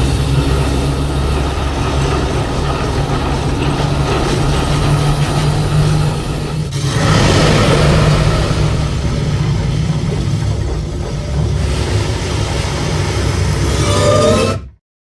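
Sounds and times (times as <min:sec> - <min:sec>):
monster roar deep rough rumble: 0:06.7 - 0:14.8.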